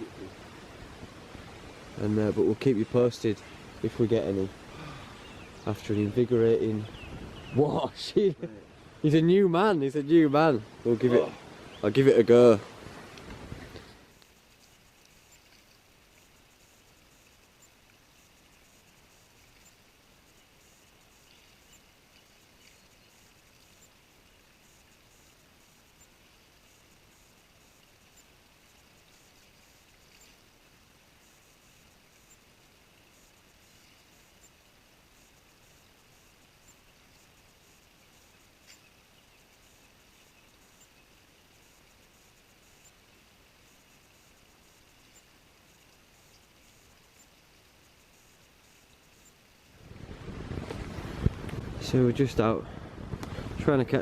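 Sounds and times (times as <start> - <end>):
faint outdoor hiss: 0.0 - 54.0
soft ticks: 13.1 - 32.5, 33.1 - 43.0.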